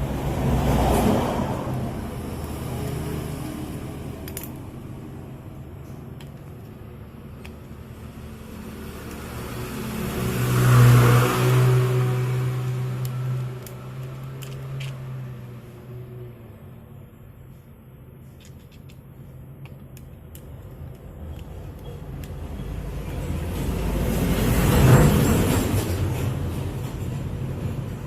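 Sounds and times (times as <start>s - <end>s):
vehicle engine passing by: 0.0s - 5.5s, 8.0s - 16.8s, 22.7s - 28.0s.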